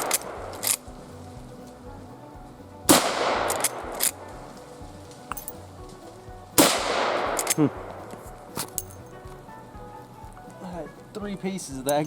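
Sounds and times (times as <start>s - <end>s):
rifle shot: 0.0s - 0.9s, 2.9s - 4.3s, 6.6s - 8.8s
rifle lever metallic clacks: 2.9s - 4.2s.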